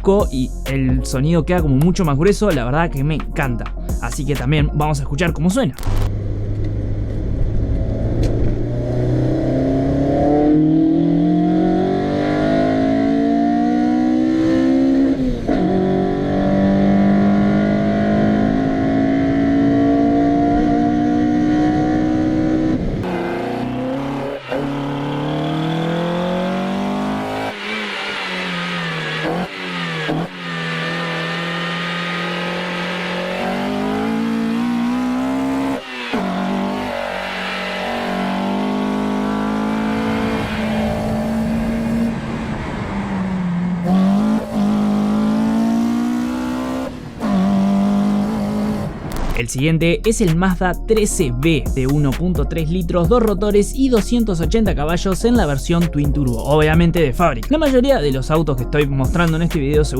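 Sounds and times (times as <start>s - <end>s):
engine revving hard: 7.8s - 49.0s.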